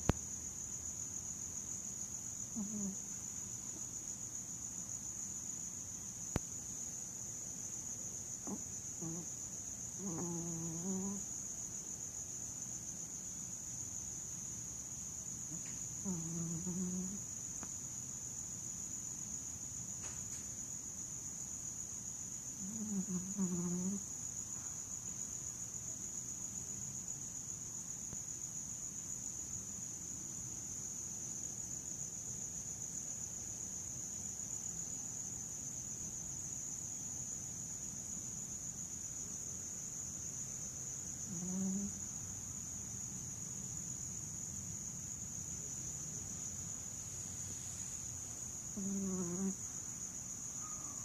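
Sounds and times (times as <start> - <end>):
person snoring: 10.0 - 11.2, 16.0 - 17.2, 22.6 - 24.0.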